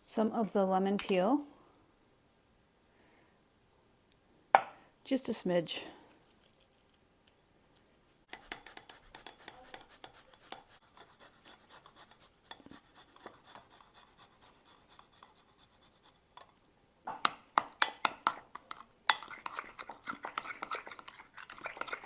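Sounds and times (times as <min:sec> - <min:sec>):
spoon scraping a bowl: 0:08.3 - 0:16.5, 0:18.3 - 0:22.0.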